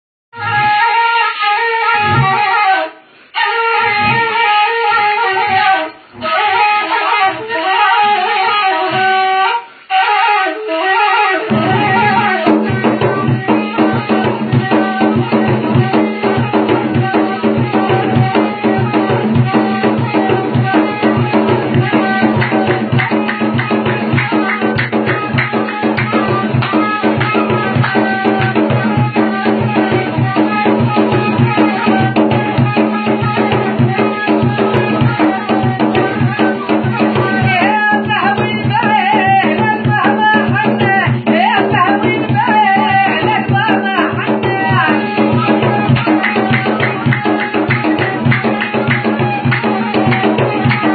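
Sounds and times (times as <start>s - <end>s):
reed flute playing: 0.4s - 41.0s, 41.6s - 50.9s
fast hand-drum beats: 11.4s - 50.9s.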